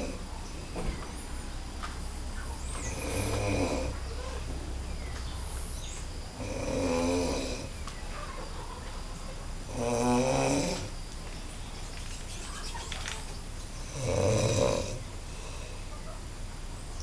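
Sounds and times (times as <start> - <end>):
man snoring loudly: 0.0 - 0.2, 2.8 - 4.0, 6.4 - 7.7, 9.7 - 10.9, 13.8 - 15.6.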